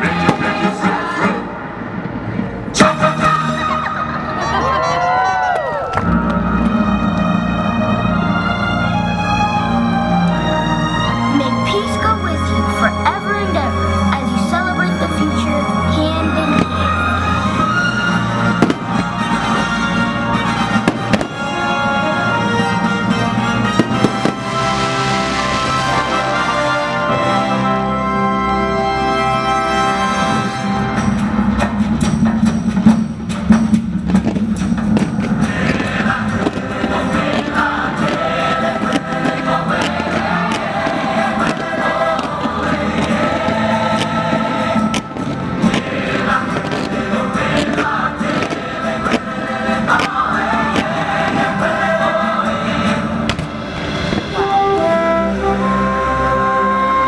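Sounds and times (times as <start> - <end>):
fireworks banging: 0.0 - 3.4, 14.3 - 27.6, 31.0 - 55.6
loud music with choir singing: 0.0 - 57.0
orchestral soundtrack: 0.0 - 57.0.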